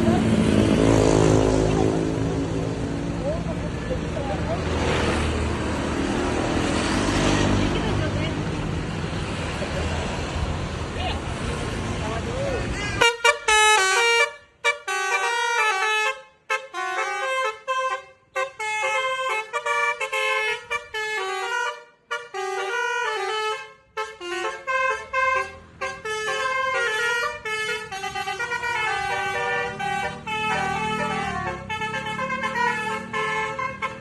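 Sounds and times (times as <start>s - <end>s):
multi-tone bus horn melody: 13.0s - 34.0s.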